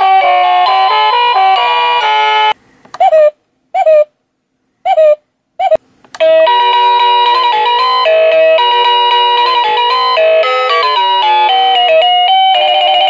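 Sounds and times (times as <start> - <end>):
electronic doorbell chime tunes: 0.0 - 2.6, 6.2 - 13.0
click: 6.0 - 6.2.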